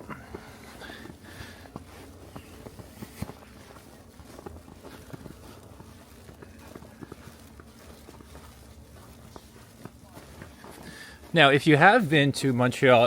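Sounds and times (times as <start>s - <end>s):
footsteps in snow: 0.0s - 13.0s.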